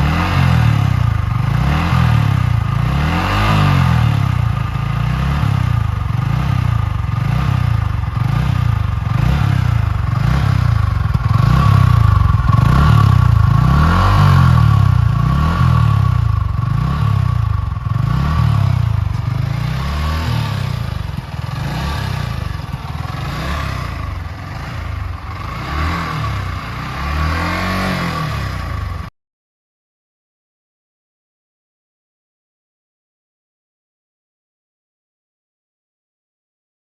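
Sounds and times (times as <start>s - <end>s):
motorcycle engine revving: 0.0s - 29.1s.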